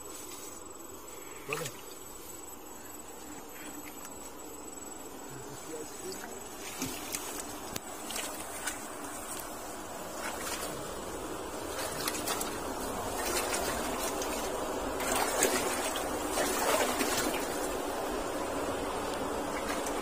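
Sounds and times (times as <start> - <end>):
flowing water rushing: 10.0 - 17.9, 19.0 - 20.0.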